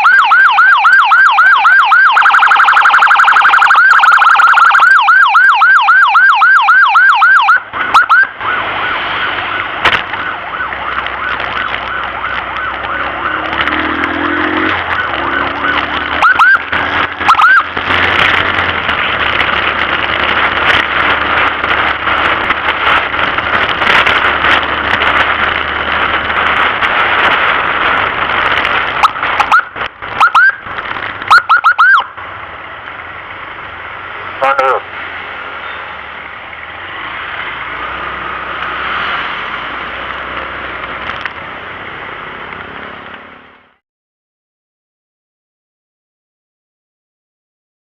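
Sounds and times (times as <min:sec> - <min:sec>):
ambulance siren yelping: 0:00.0 - 0:18.4, 0:29.0 - 0:30.6, 0:31.3 - 0:32.2, 0:34.4 - 0:34.9
road and traffic noise: 0:00.0 - 0:43.8.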